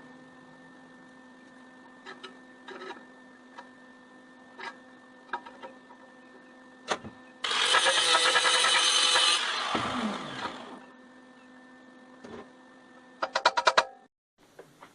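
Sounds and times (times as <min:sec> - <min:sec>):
shop hum: 0:00.0 - 0:14.9
loud power tool running: 0:07.4 - 0:10.9.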